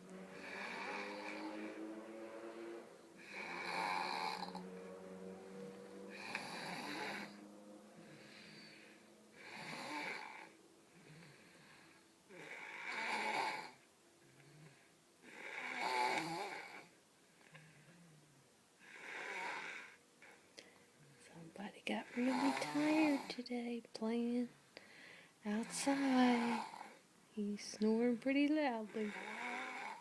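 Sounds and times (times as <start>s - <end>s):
quiet breathing: 0.0s - 30.0s
rasping snores: 0.2s - 4.8s, 6.1s - 7.4s, 8.0s - 18.2s, 18.8s - 20.4s, 22.0s - 23.4s, 25.6s - 27.0s, 28.8s - 30.0s.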